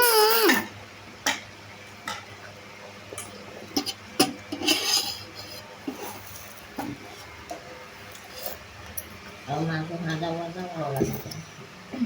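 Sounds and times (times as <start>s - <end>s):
utensils clinking against a dish: 3.1s - 6.8s.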